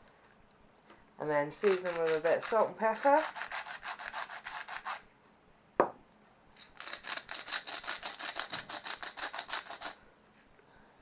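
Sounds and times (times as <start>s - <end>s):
seasoning grinder crunching: 1.6s - 5.0s, 6.6s - 10.0s.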